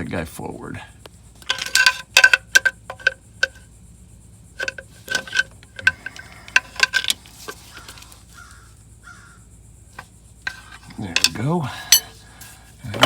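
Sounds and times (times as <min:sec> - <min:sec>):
pry tool tapping metal ring: 0:01.4 - 0:03.6, 0:04.6 - 0:07.2, 0:10.5 - 0:12.2.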